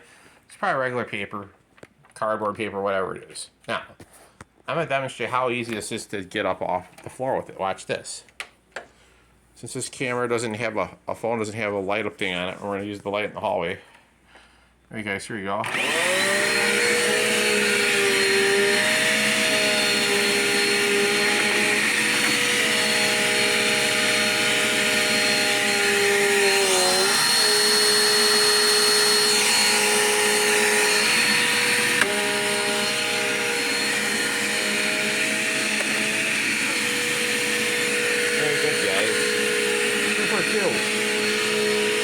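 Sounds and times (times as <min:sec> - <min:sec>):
vacuum cleaner running: 0:15.6 - 0:42.0.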